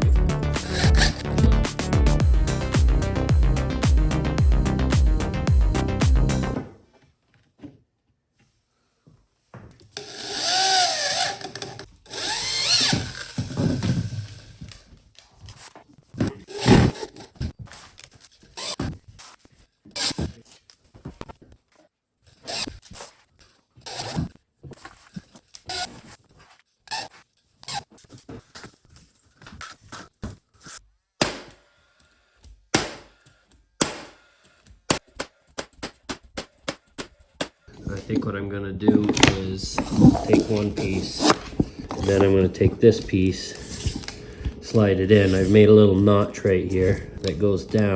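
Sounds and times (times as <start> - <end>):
power tool motor whine: 10.0 - 14.4
hammer striking wood: 31.2 - 31.6, 32.8 - 33.2, 33.8 - 34.2
rough working noise: 37.9 - 47.9.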